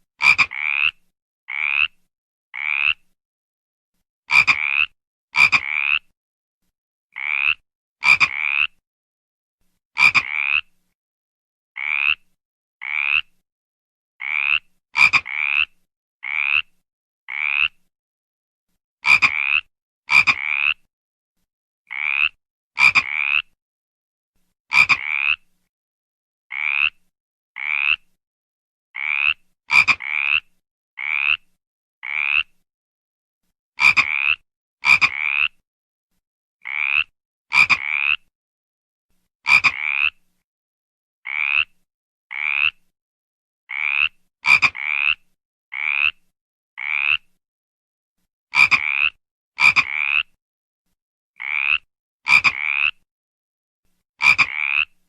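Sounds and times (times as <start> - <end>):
frog croaking: 0.2 - 2.0, 2.6 - 3.0, 4.3 - 6.1, 7.2 - 8.8, 10.0 - 10.7, 11.8 - 12.2, 12.8 - 13.3, 14.2 - 16.7, 17.3 - 17.8, 19.0 - 20.8, 21.9 - 23.6, 24.7 - 25.4, 26.5 - 27.0, 27.6 - 28.1, 29.0 - 31.4, 32.0 - 32.5, 33.8 - 35.5, 36.6 - 38.2, 39.5 - 40.2, 41.3 - 42.8, 43.7 - 46.2, 46.8 - 47.3, 48.6 - 50.3, 51.4 - 53.0, 54.2 - 54.9.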